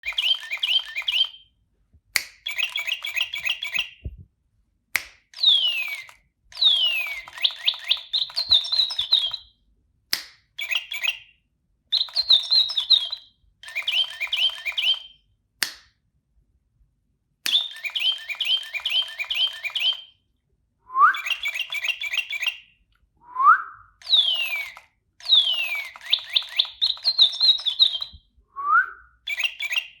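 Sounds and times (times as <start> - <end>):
sharp clicks: 0.0 - 1.4, 5.0 - 9.4, 12.0 - 16.0, 17.4 - 20.2, 24.0 - 28.2
electronic toy birdsong chirps: 0.0 - 1.6, 2.5 - 4.1, 5.4 - 9.6, 10.6 - 15.3, 17.5 - 20.2, 21.0 - 22.8, 24.0 - 28.3, 29.2 - 30.0.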